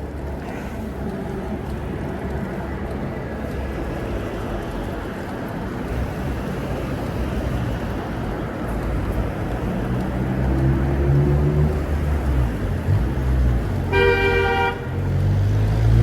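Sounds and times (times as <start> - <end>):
city street traffic: 0.0 - 16.0
vehicle passing: 5.9 - 14.0, 14.6 - 16.0.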